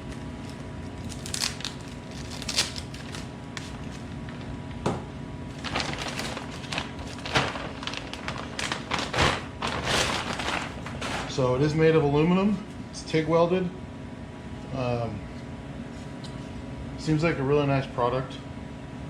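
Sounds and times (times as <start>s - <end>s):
packaging crinkling and rustling: 0.0s - 4.9s, 5.5s - 11.6s
steady low hum: 0.0s - 19.0s.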